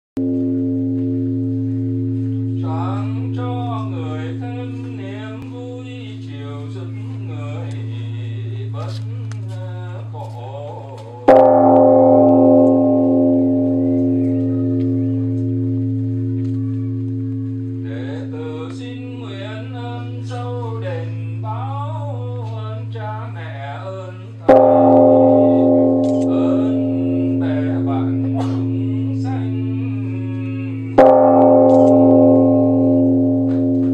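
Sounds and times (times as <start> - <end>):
temple bell ringing: 0.2 - 8.9, 11.1 - 33.9
person chanting: 0.2 - 33.9.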